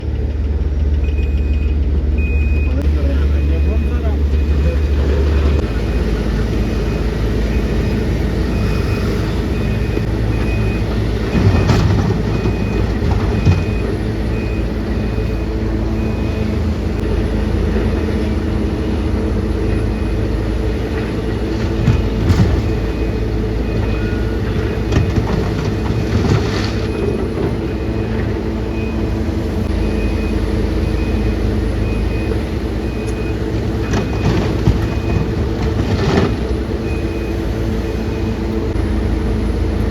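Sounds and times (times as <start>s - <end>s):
heavy diesel machinery running: 0.0s - 39.9s
high warning beep: 1.0s - 11.6s.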